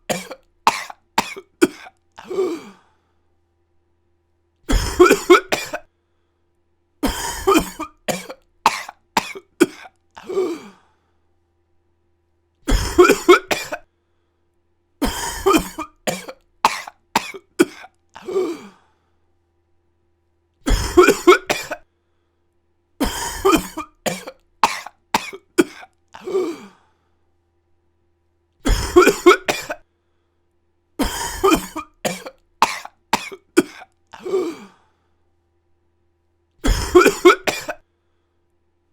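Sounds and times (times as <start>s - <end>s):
person coughing: 0.0s - 2.9s, 4.7s - 5.9s, 7.0s - 10.8s, 12.7s - 13.9s, 15.0s - 18.8s, 20.6s - 21.9s, 23.0s - 26.8s, 28.6s - 29.8s, 31.0s - 34.8s, 36.6s - 37.8s.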